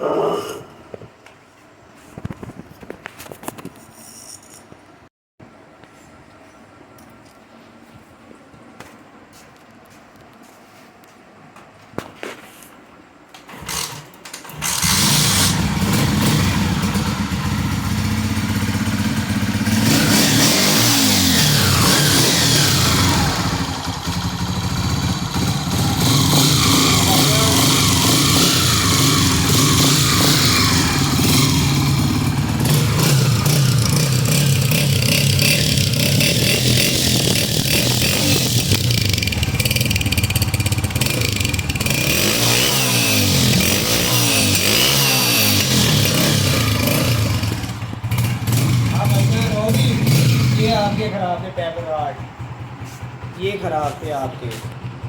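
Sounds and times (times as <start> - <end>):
motorcycle engine starting and running: 13.5 - 55.0.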